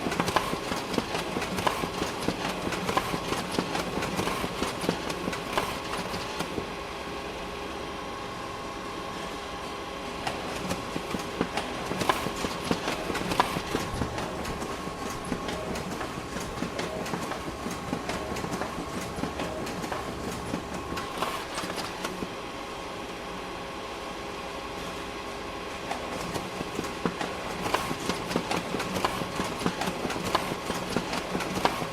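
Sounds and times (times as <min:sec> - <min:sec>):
printer paper feed clicking: 0:00.0 - 0:06.8, 0:10.2 - 0:22.4, 0:25.8 - 0:31.9
printer mechanical hum: 0:00.0 - 0:31.9.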